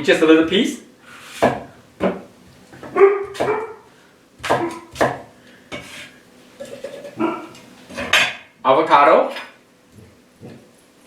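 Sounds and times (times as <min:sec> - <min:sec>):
dog barking: 0:02.8 - 0:03.9, 0:04.5 - 0:04.9, 0:07.2 - 0:07.6.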